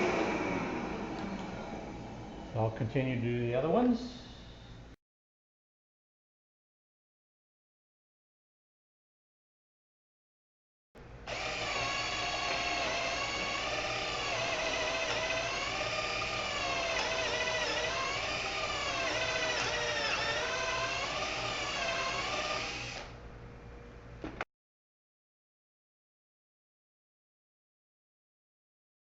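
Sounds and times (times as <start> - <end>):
cordless drill boring into wood: 11.3 - 23.1.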